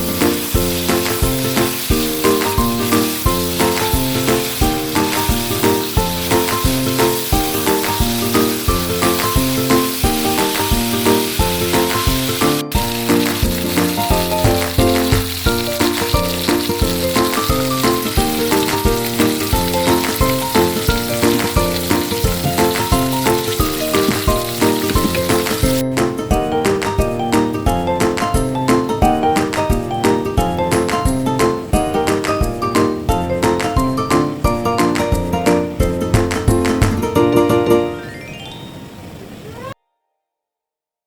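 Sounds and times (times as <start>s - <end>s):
food sizzling in hot oil: 0.0s - 26.0s
rhythmic background music: 0.0s - 38.1s.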